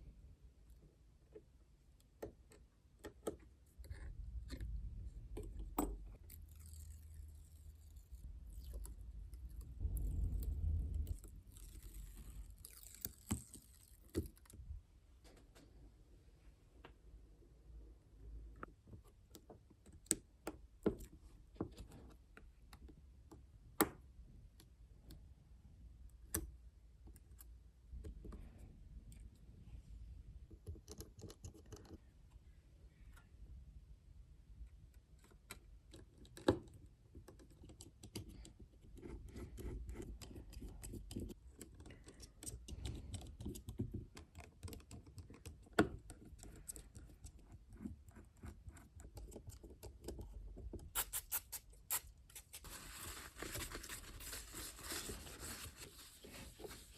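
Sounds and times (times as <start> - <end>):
small clicks and taps: 39.9 - 50.9.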